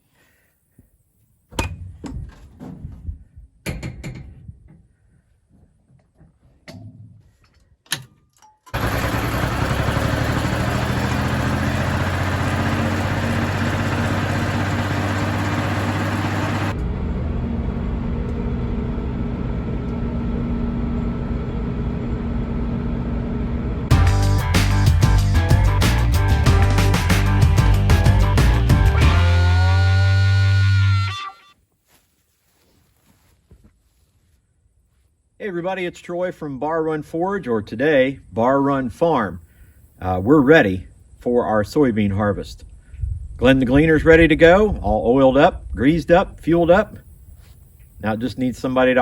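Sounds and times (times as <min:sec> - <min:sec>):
knocks and clunks: 0:01.5 - 0:04.8
combine harvester engine running: 0:08.8 - 0:30.9.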